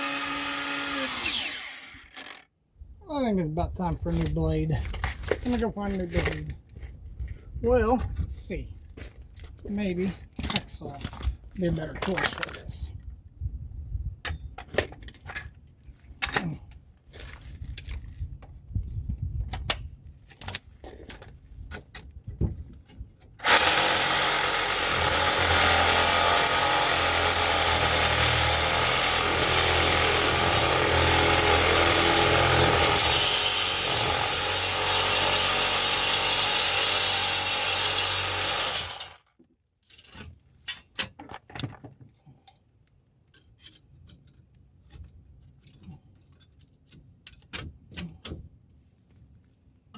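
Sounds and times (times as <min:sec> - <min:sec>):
power cutting tool cutting steel: 0:00.0 - 0:02.5, 0:23.4 - 0:39.2.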